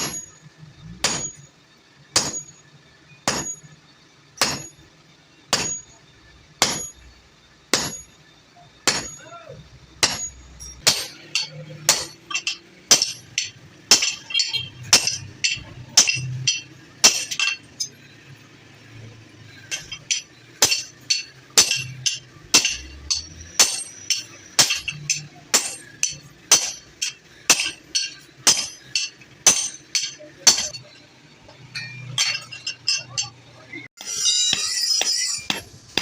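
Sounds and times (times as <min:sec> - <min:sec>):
hammer ringing on anvil: 0:00.0 - 0:00.4, 0:01.0 - 0:01.5, 0:02.2 - 0:02.6, 0:03.3 - 0:03.8, 0:04.4 - 0:04.8, 0:05.5 - 0:05.9, 0:06.6 - 0:07.1, 0:07.7 - 0:08.2, 0:08.8 - 0:09.4, 0:10.0 - 0:18.1, 0:19.6 - 0:31.0, 0:34.0 - 0:36.0.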